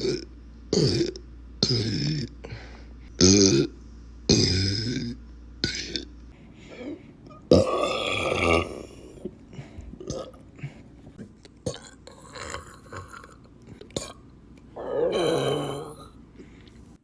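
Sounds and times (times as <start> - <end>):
person burping: 0.0 - 2.3, 7.3 - 9.4, 10.0 - 10.7, 11.7 - 14.2, 14.8 - 16.2.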